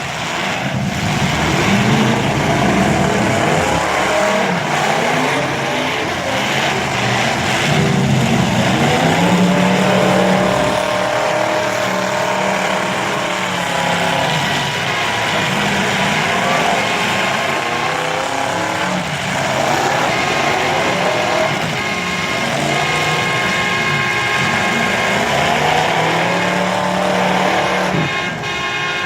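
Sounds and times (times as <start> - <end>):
car engines revving: 0.0 - 29.0.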